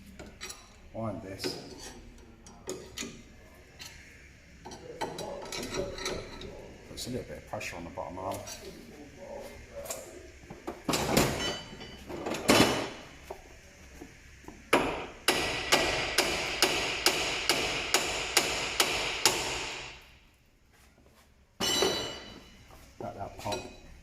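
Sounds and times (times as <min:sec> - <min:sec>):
hammer striking steel: 0:14.7 - 0:20.0, 0:21.6 - 0:22.5.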